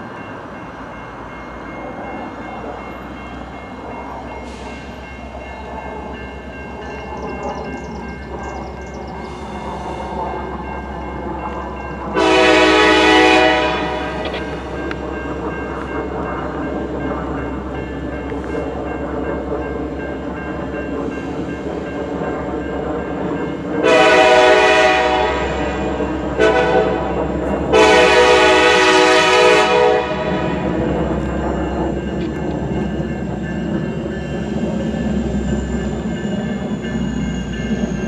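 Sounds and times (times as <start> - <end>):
diesel locomotives rumbling: 0.0 - 38.0
train air horn chord: 12.2 - 14.4, 23.8 - 30.6.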